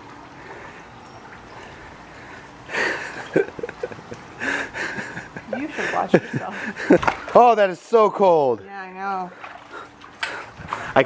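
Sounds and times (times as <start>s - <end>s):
pool water lapping: 0.0s - 11.0s
water splashing: 9.2s - 11.0s.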